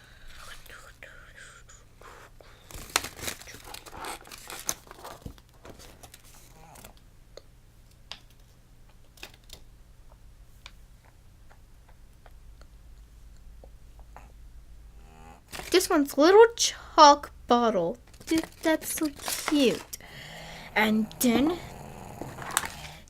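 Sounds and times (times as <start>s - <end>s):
plastic packaging crinkling and tearing: 2.6s - 6.9s, 15.5s - 15.9s, 18.0s - 20.0s, 22.2s - 23.0s.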